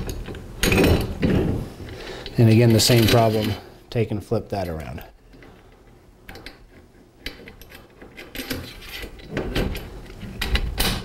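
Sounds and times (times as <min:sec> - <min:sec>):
metal brackets clinking and scraping: 0:02.2 - 0:03.8, 0:04.5 - 0:11.0.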